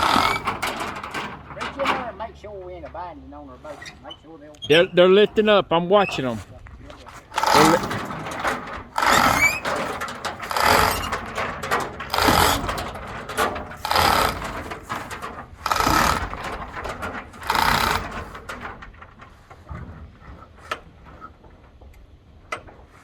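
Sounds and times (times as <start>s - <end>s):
rising squeak: 0.0s - 1.2s, 8.9s - 13.0s
hand-operated hoist strokes: 0.0s - 2.2s, 7.2s - 18.9s.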